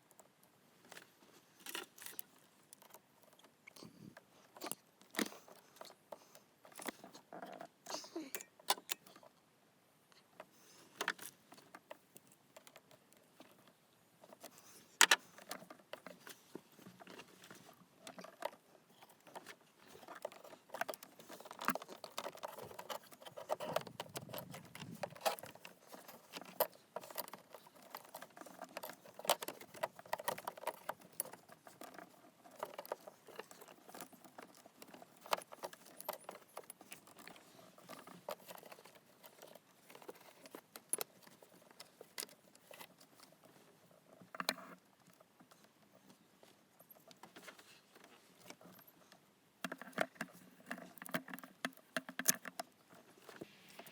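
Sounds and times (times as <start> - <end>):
hand work on hoses clicking: 10.4 - 43.6.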